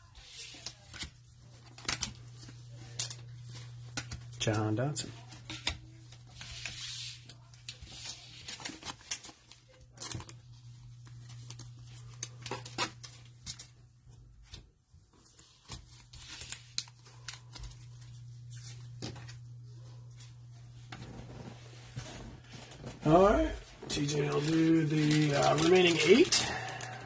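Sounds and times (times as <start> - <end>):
plastic wrapper crinkling and tearing: 5.1 - 13.8, 15.2 - 19.6, 22.2 - 27.0.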